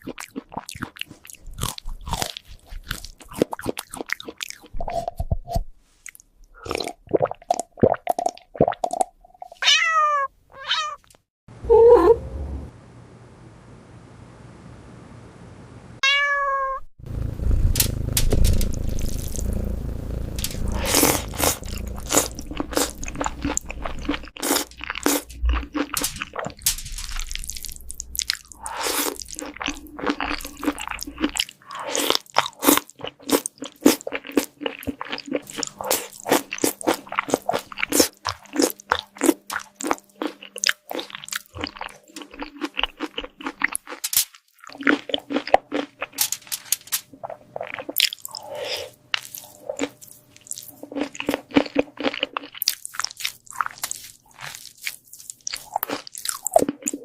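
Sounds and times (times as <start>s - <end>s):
cat crunching food: 0.0s - 4.7s, 17.8s - 31.5s, 32.1s - 47.0s, 49.2s - 57.0s
low rumble: 11.6s - 14.1s, 17.0s - 23.9s.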